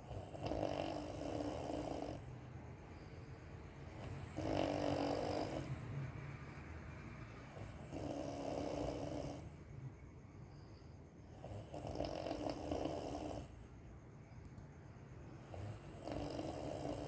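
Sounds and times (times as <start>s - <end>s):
woman snoring: 0.0s - 2.3s, 3.9s - 5.8s, 7.5s - 9.6s, 11.3s - 13.6s, 15.4s - 17.0s
quiet breathing: 0.0s - 17.0s.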